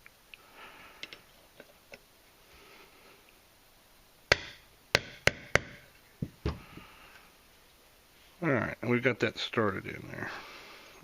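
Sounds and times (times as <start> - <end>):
sharp metal taps: 4.3 - 5.9.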